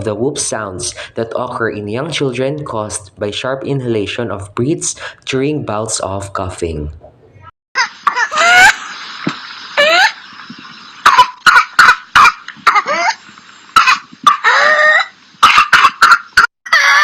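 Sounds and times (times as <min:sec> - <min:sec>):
child coughing: 0:13.8 - 0:14.5, 0:15.4 - 0:16.3.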